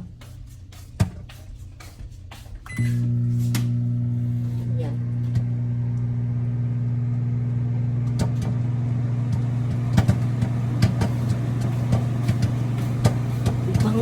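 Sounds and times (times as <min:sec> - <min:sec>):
microwave oven humming: 0:02.6 - 0:14.0
popcorn popping: 0:09.2 - 0:14.0.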